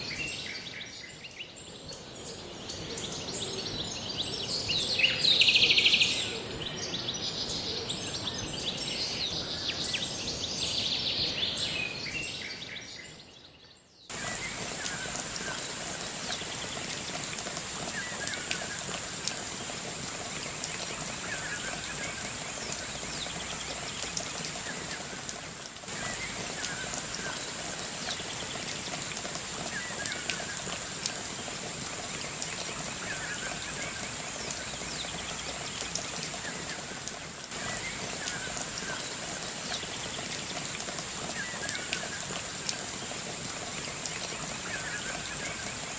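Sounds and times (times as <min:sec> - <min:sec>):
birds calling: 0:00.0 - 0:16.9
rain patter: 0:00.0 - 0:45.9.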